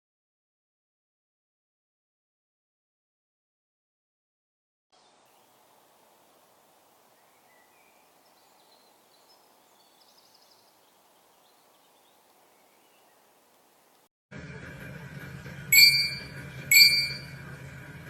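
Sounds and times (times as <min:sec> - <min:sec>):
faint background hiss: 0:05.0 - 0:14.1
faint high chirps: 0:15.8 - 0:17.4.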